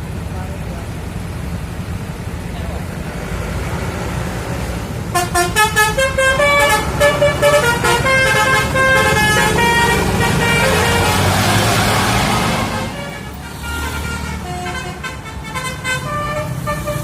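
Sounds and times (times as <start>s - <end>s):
vehicle engine running: 0.0s - 17.0s
rushing noise: 3.0s - 17.0s
multi-tone bus horn tune: 5.1s - 17.0s.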